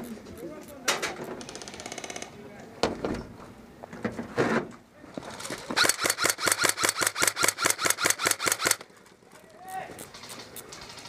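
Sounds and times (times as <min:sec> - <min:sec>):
airsoft gun rapid fire: 0:05.8 - 0:08.8.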